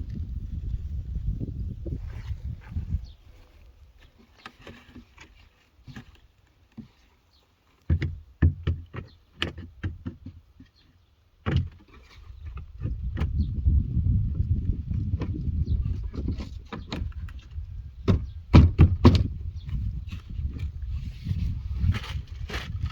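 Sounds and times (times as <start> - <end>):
wind on microphone: 0.0 - 3.8, 12.2 - 22.9
plastic panels knocking: 7.9 - 10.4, 18.0 - 19.4.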